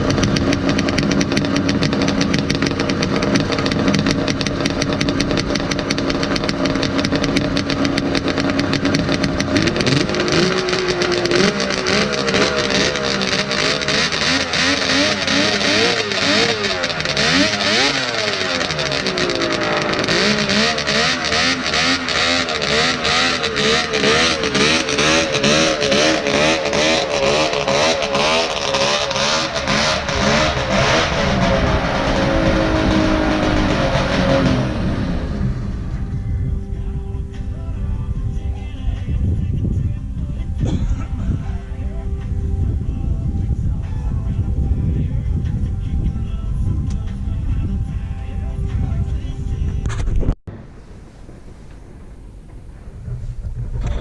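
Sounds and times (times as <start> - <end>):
snowmobile engine revving: 0.0 - 36.3.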